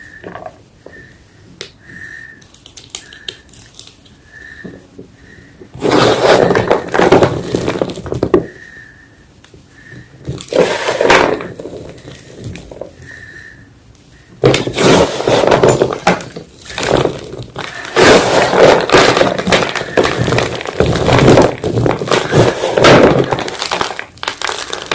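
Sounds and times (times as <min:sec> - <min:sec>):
chalk crunching and crumbling: 0:05.8 - 0:08.2, 0:14.4 - 0:24.9.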